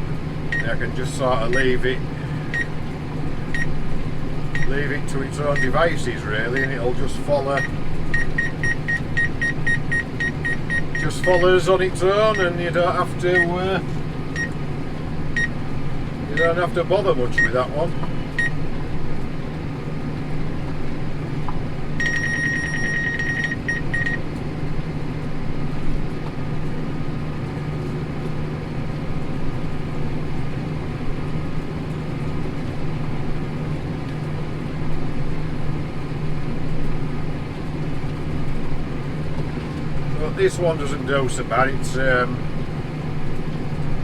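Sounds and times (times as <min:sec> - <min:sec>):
tractor engine droning: 0:00.0 - 0:44.0
rapid electronic beeps: 0:00.5 - 0:00.8, 0:04.6 - 0:04.8, 0:05.5 - 0:05.8, 0:07.6 - 0:11.6, 0:13.3 - 0:13.5, 0:22.0 - 0:24.2.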